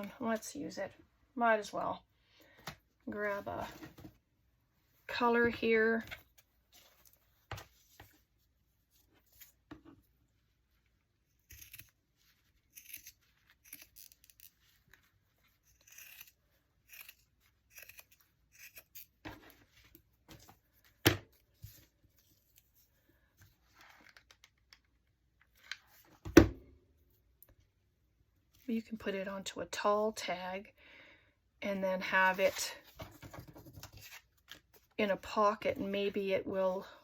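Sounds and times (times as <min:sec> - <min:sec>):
scissors cutting paper: 0:11.4 - 0:12.0, 0:12.6 - 0:14.6, 0:15.6 - 0:19.3.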